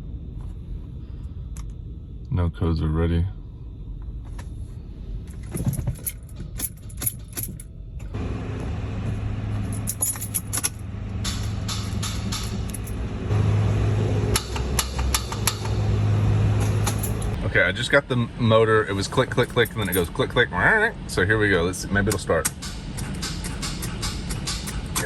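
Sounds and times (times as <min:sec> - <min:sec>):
low vehicle hum: 0:00.0 - 0:25.0
keys rattling and clicking: 0:05.3 - 0:08.2, 0:09.6 - 0:13.0, 0:16.6 - 0:17.4, 0:19.0 - 0:20.1.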